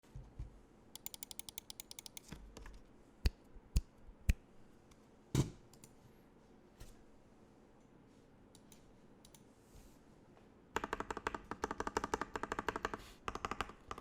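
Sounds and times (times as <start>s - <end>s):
mechanical keyboard typing: 1.0s - 2.3s, 10.8s - 14.0s.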